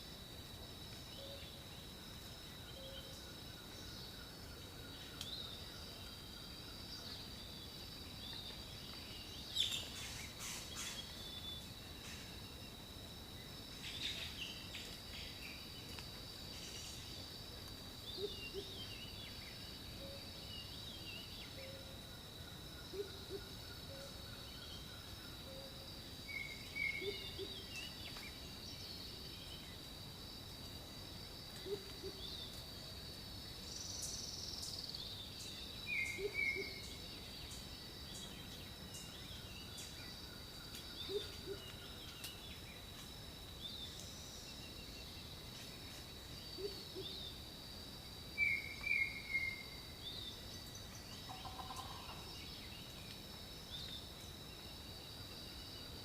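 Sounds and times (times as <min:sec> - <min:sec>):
high insect drone: 0:00.0 - 0:56.0
bird calls: 0:09.5 - 0:12.4, 0:26.3 - 0:28.4, 0:35.9 - 0:37.0, 0:40.7 - 0:42.4.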